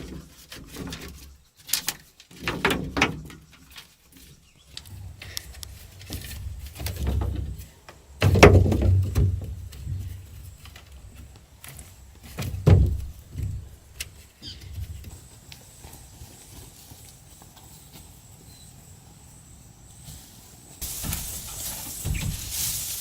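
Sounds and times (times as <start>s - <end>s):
heavy dull thuds: 12.4s - 13.9s
scraping: 20.2s - 23.0s.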